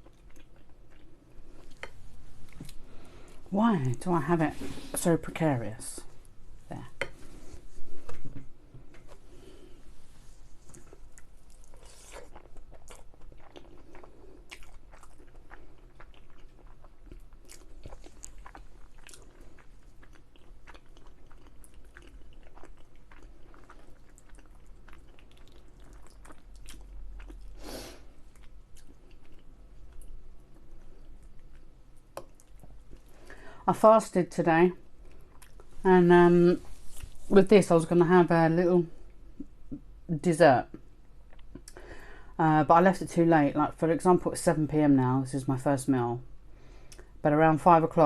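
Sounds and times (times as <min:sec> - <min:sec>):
person chewing food: 0:00.0 - 0:03.5, 0:06.2 - 0:33.6, 0:34.9 - 0:35.8, 0:41.1 - 0:41.8
food crunching: 0:10.6 - 0:33.3.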